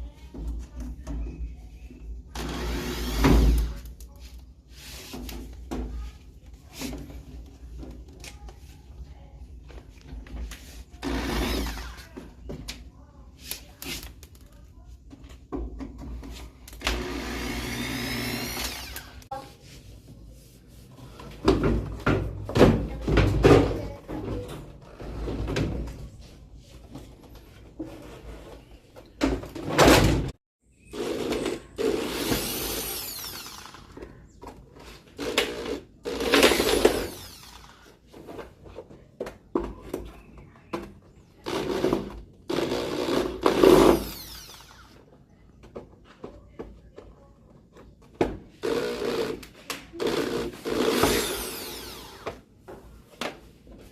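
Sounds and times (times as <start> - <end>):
cordless drill whining: 2.4 - 3.7, 16.8 - 19.3, 30.9 - 34.0, 35.2 - 37.9, 42.5 - 45.0, 48.6 - 49.4, 50.0 - 52.4.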